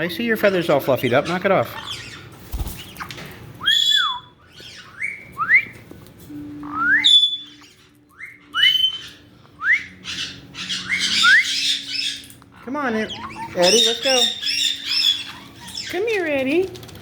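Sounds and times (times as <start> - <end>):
parrot harsh squawks: 3.6 - 5.2, 6.6 - 15.9
parrot rising whistles: 3.6 - 5.8, 6.6 - 12.0.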